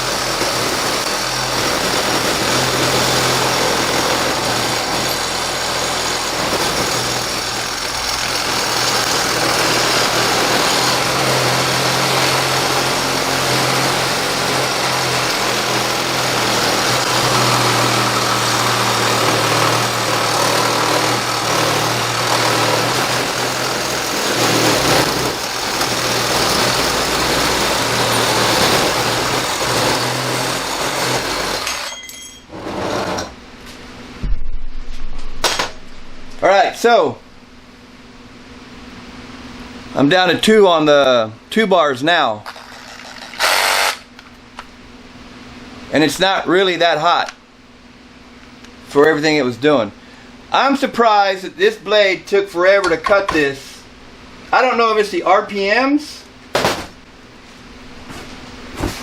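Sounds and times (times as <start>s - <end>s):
reciprocating saw cutting aluminum: 0.0s - 33.3s, 42.5s - 44.1s.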